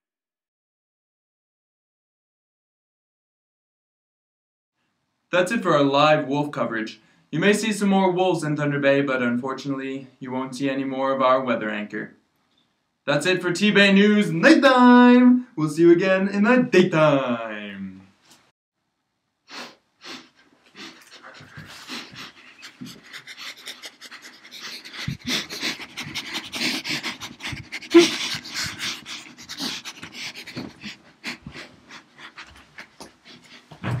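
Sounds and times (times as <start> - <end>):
dog panting: 20.7 - 33.9.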